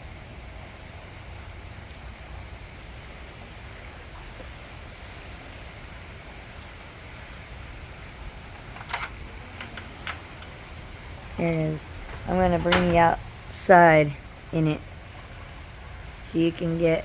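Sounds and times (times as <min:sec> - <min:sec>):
wind buffeting microphone: 0:03.1 - 0:17.0
gusty wind blowing: 0:05.3 - 0:17.0.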